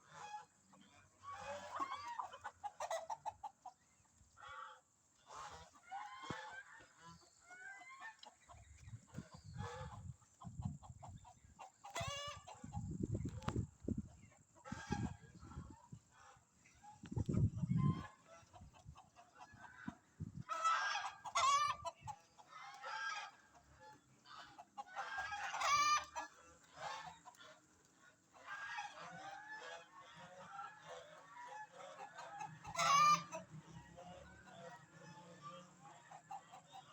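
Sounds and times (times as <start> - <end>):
chickens clucking and squawking: 0.0 - 36.9.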